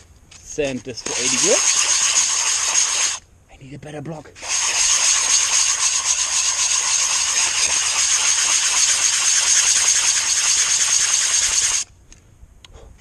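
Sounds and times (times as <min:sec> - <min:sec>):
sanding scratchy hiss: 0:00.5 - 0:03.2, 0:04.4 - 0:11.9.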